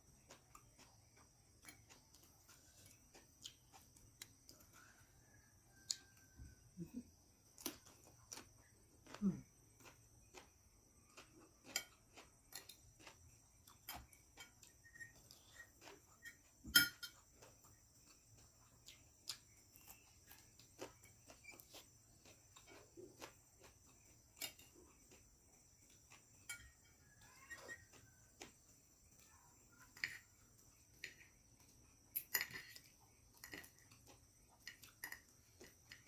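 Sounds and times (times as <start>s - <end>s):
spoon clinking against plate: 16.2s - 17.3s, 26.4s - 27.1s.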